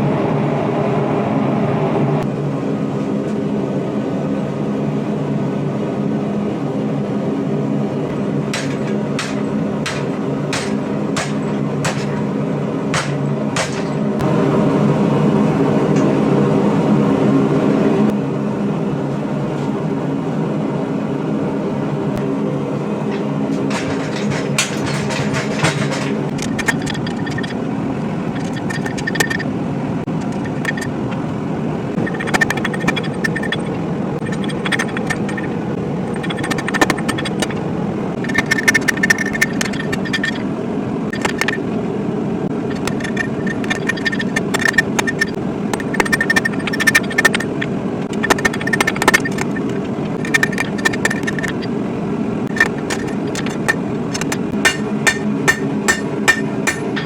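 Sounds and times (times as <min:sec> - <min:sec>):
metal strikes on anvil: 0:08.5 - 0:12.3, 0:12.9 - 0:14.2, 0:23.1 - 0:26.3, 0:54.6 - 0:57.0.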